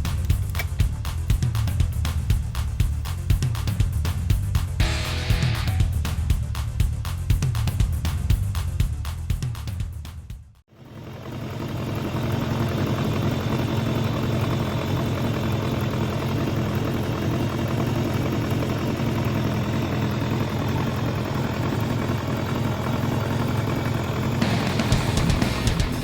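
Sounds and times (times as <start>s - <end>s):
motorcycle engine running steadily: 0.0s - 26.0s.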